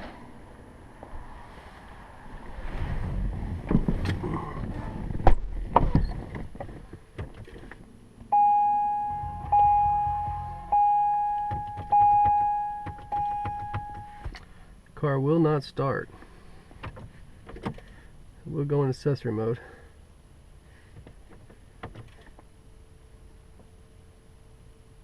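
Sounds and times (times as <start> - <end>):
car warning chime dinging: 8.3 - 14.3
knocks and clicks: 9.1 - 14.4.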